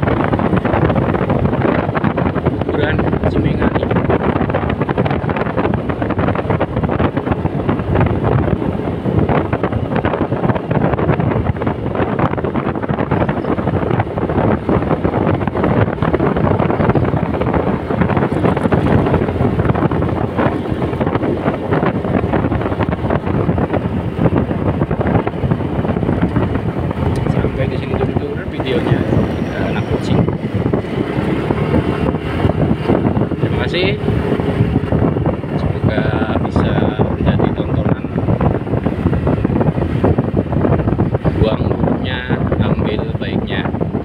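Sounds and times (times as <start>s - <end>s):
road noise: 0.0s - 44.0s
wind buffeting microphone: 0.0s - 44.0s
motorcycle engine: 3.8s - 35.8s.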